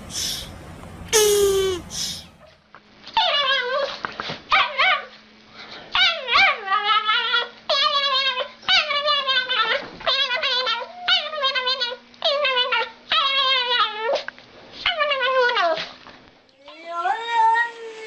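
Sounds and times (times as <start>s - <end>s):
brief falling cry: 1.1s - 2.3s
dog whining and whimpering: 3.2s - 5.1s, 6.0s - 14.2s, 14.8s - 15.9s, 16.6s - 18.0s.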